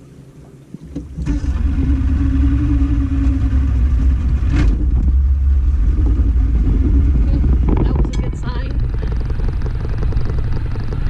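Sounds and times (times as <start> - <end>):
boat engine rumbling: 0.0 - 11.0.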